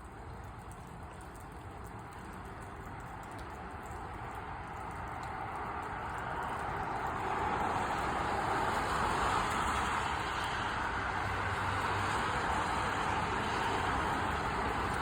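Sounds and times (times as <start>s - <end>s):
passing vehicles rushing: 4.8s - 15.0s.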